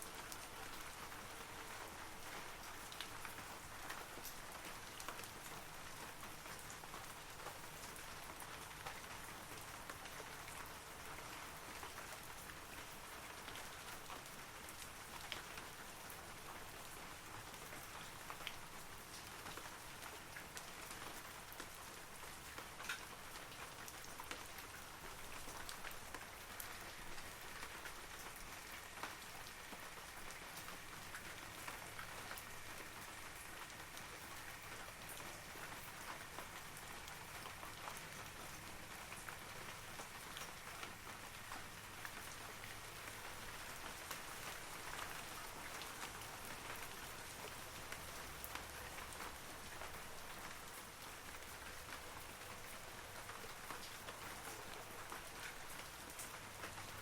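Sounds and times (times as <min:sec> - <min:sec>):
rain falling on trees: 0:00.0 - 0:57.0.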